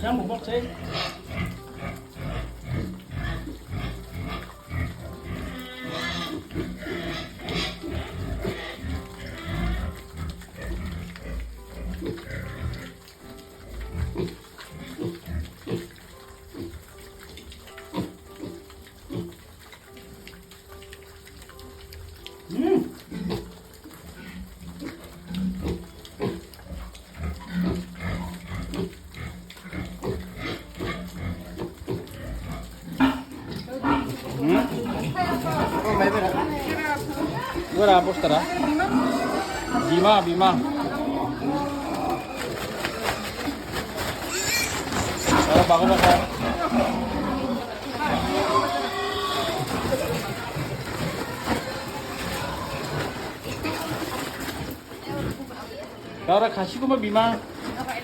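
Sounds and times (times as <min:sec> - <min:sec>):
pigs grunting: 0:00.0 - 0:58.0
high bright pig call: 0:00.7 - 0:10.0, 0:37.0 - 0:53.2.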